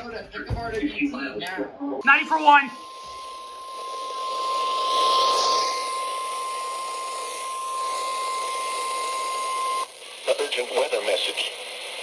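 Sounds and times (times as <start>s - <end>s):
steady warning alarm beep: 2.0s - 9.9s
radio static hiss: 2.0s - 12.0s.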